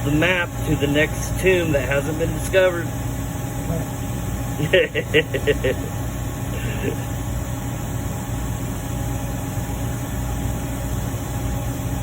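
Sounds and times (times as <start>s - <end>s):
low mechanical hum: 0.0s - 12.0s.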